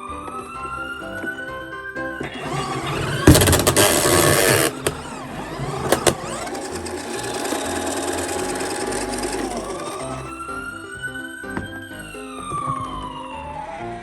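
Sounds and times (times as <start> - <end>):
toy motors whirring: 2.2 - 10.4
plastic clacks: 2.2 - 13.2.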